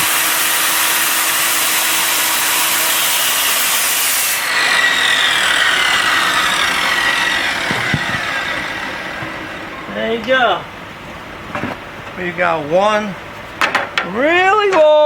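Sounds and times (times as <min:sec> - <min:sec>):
power saw cutting plexiglass: 0:00.0 - 0:09.9.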